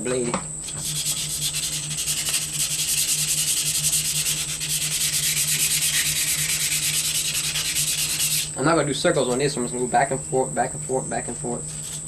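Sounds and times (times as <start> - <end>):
sandpaper rubbing on steel blade: 0.6 - 8.6, 11.7 - 12.0.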